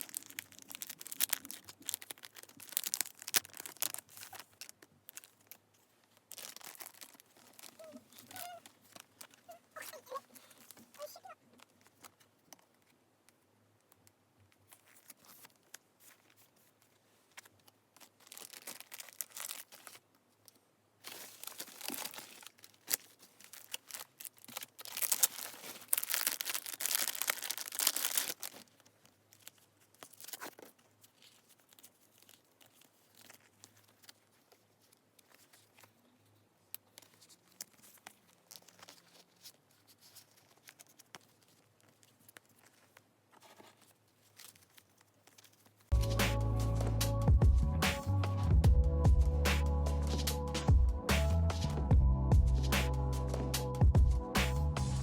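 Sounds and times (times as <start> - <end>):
packaging tearing and crinkling: 0.0 - 12.8, 17.3 - 35.9, 36.8 - 46.4
small rustles and clicks: 0.0 - 46.0.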